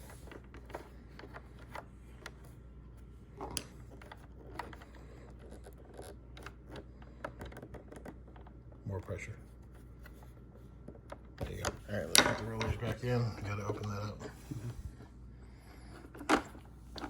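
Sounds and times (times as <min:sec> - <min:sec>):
plastic parts clicking and tapping: 0:03.4 - 0:08.8.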